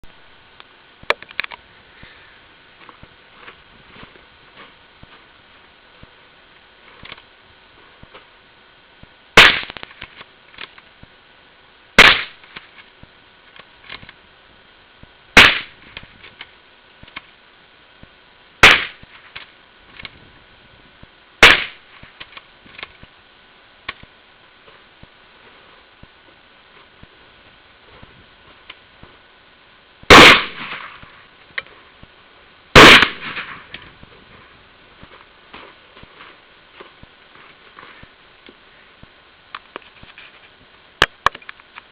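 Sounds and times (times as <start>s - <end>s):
gunshots: 9.4s - 9.8s, 12.0s - 12.4s, 15.4s - 15.8s, 18.6s - 19.1s, 21.4s - 21.8s, 30.1s - 31.1s, 32.8s - 33.7s.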